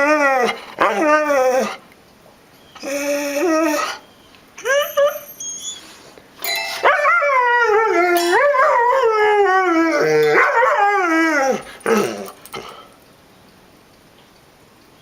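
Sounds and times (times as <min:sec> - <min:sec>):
dog howling: 0:00.0 - 0:01.8, 0:06.8 - 0:12.4.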